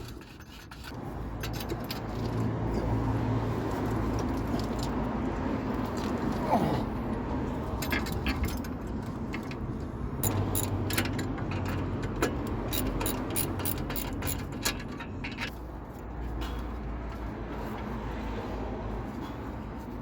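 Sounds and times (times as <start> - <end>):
hand tools and metal parts clinking: 0.0 - 6.8, 7.4 - 18.0
ratchet-like clicks: 12.0 - 15.3.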